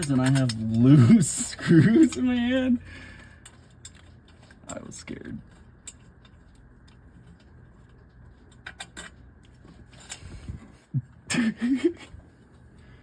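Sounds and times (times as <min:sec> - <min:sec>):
bolts and parts clicking: 0:00.0 - 0:02.6
man talking: 0:00.0 - 0:02.8, 0:04.6 - 0:05.5.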